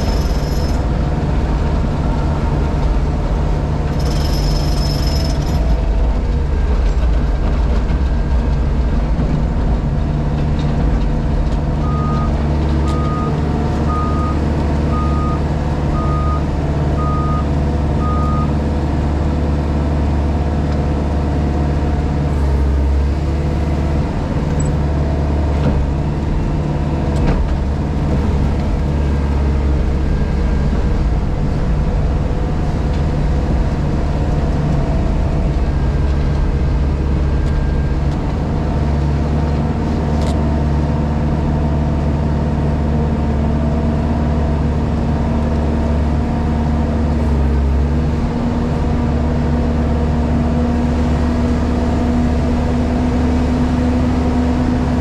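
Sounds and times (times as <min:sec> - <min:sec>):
diesel engine running: 0:00.0 - 0:55.0
reversing alarm beeping: 0:11.8 - 0:18.5.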